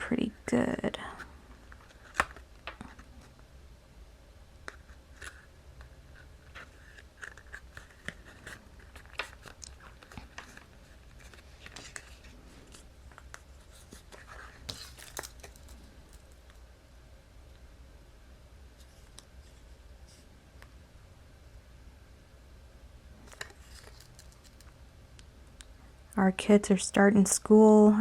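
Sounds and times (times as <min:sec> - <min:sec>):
paper rustling: 0:04.7 - 0:16.5, 0:23.2 - 0:24.7.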